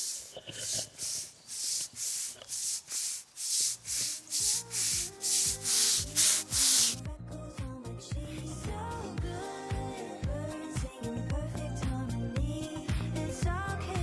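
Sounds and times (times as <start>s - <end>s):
applicator scrubbing concrete: 0.0s - 7.0s
background music: 4.0s - 14.0s.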